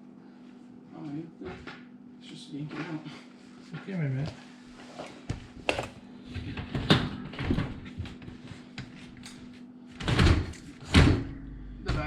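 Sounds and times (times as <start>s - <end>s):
dishwasher knocks and clunks: 10.0s - 12.0s.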